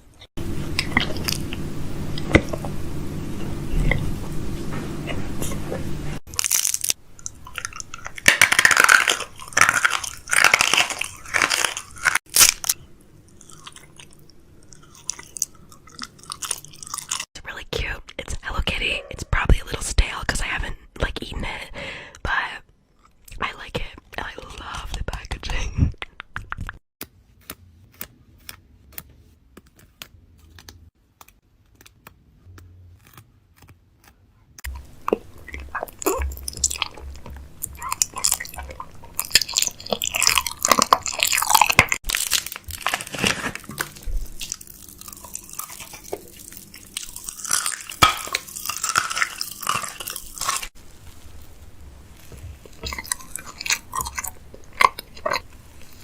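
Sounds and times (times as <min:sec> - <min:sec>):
dense crackling and crunching: 0:06.2 - 0:17.3, 0:32.8 - 0:56.0.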